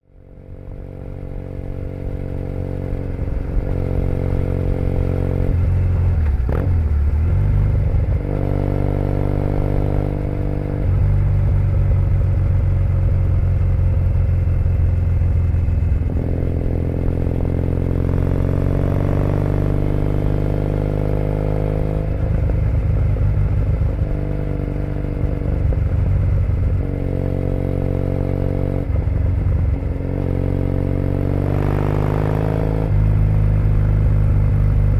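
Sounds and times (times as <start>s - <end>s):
motorcycle engine shifting gears: 2.3s - 34.9s.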